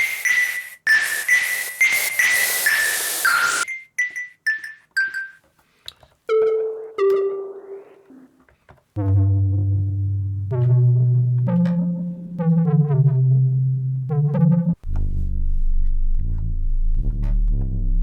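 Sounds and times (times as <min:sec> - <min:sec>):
water drop sampler keyboard notes: 0:06.3 - 0:08.3, 0:09.0 - 0:18.0.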